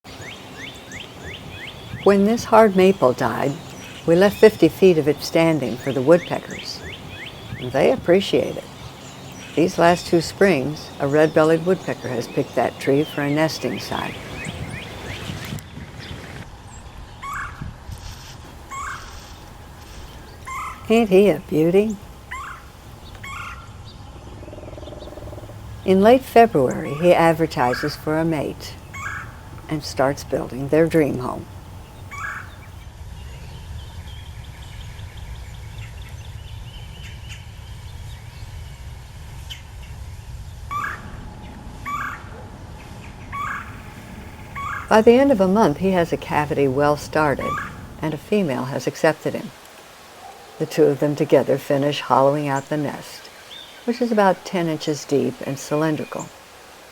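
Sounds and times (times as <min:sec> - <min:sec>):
woodpecker calling: 0:00.1 - 0:15.2, 0:18.5 - 0:32.8, 0:40.7 - 0:41.1, 0:41.8 - 0:42.4, 0:43.0 - 0:56.9
woodpecker rising calls: 0:18.5 - 0:32.8, 0:40.7 - 0:48.3
steady low rumble: 0:18.5 - 0:48.5.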